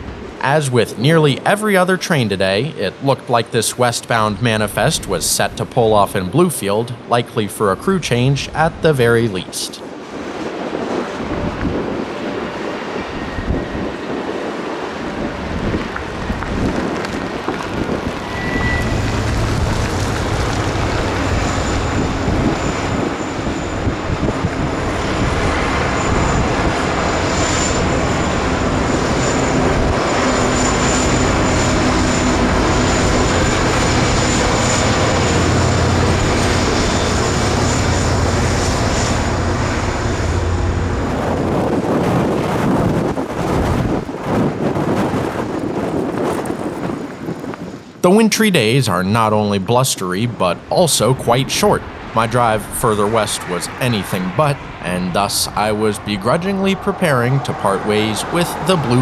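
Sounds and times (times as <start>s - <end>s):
wind buffeting microphone: 7.7s - 48.0s, 50.1s - 59.0s
diesel locomotive engine drone: 9.8s - 47.2s, 50.4s - 59.0s.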